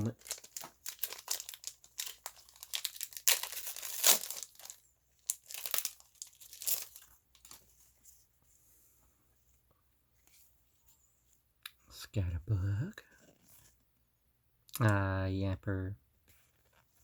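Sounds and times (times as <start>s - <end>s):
foil wrapper crinkling and tearing: 0.0s - 7.6s.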